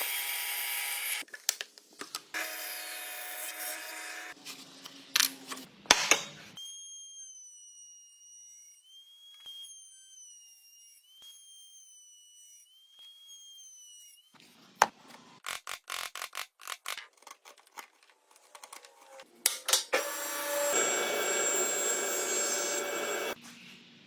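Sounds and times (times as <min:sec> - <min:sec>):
power tool running: 0:19.9 - 0:23.4
sawing strokes on wood: 0:20.0 - 0:23.4.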